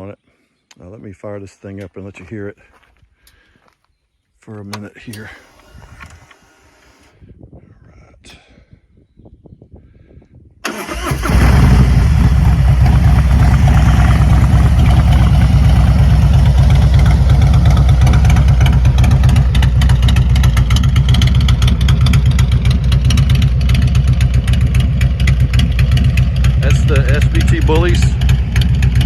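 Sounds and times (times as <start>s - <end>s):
motorcycle engine starting and idling: 4.7s - 7.1s, 10.6s - 29.0s.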